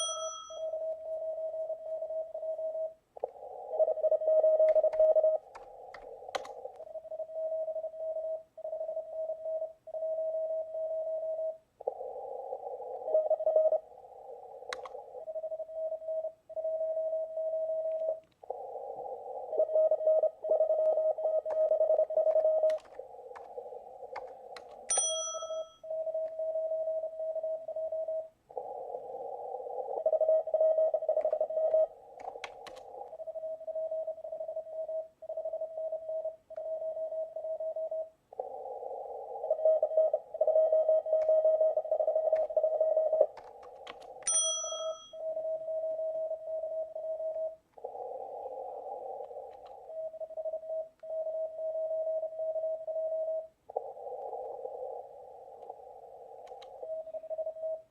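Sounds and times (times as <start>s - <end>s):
morse code tone: 0.0s - 1.6s, 24.1s - 27.2s, 39.8s - 47.3s
sharp clicks: 4.6s - 6.9s, 14.6s - 15.0s, 20.8s - 25.0s, 31.1s - 33.2s, 43.2s - 44.4s, 49.2s - 49.8s, 56.4s - 57.0s.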